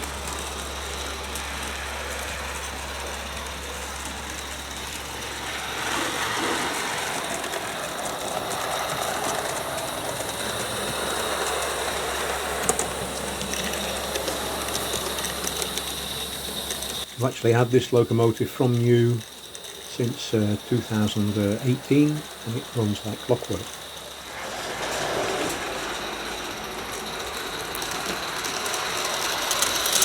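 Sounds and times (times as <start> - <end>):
coaches rolling on track: 0.0 - 30.0
model steam locomotive running: 0.0 - 30.0.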